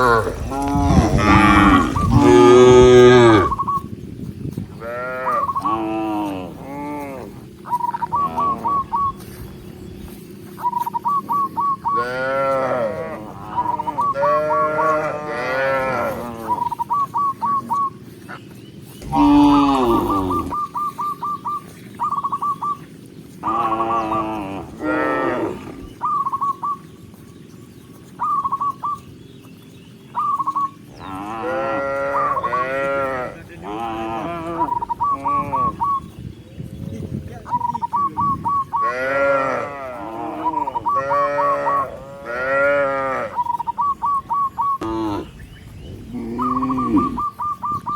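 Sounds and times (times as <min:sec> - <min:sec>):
cattle mooing: 0:00.0 - 0:03.6, 0:04.8 - 0:07.4, 0:12.0 - 0:16.6, 0:19.0 - 0:20.6, 0:23.4 - 0:26.0, 0:31.0 - 0:35.8, 0:38.8 - 0:43.5, 0:44.8 - 0:45.4, 0:46.0 - 0:47.4
high chirping notes: 0:19.0 - 0:22.8.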